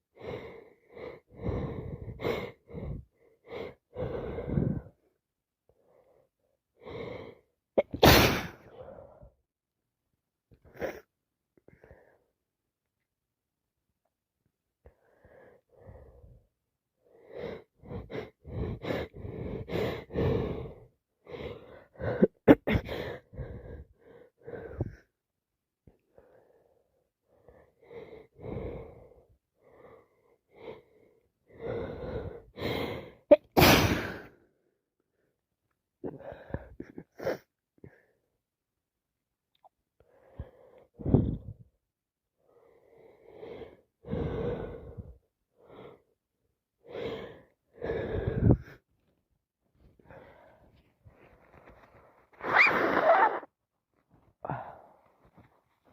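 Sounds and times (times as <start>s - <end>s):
person sneezing: 7.8s - 8.6s, 33.3s - 34.3s, 52.4s - 53.5s.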